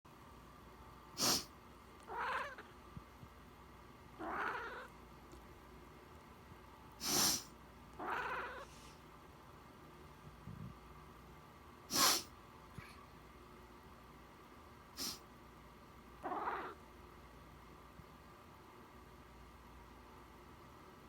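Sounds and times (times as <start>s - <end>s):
person sniffling: 1.2s - 1.5s, 7.0s - 7.5s, 11.9s - 12.3s, 15.0s - 15.2s
cat meowing: 2.0s - 2.7s, 4.2s - 4.9s, 8.0s - 8.8s, 16.2s - 16.8s.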